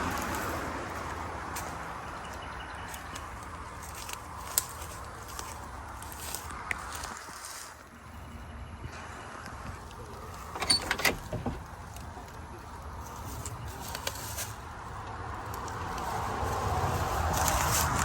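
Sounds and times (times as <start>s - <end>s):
sharp clicks and knocks: 10.5s - 11.7s.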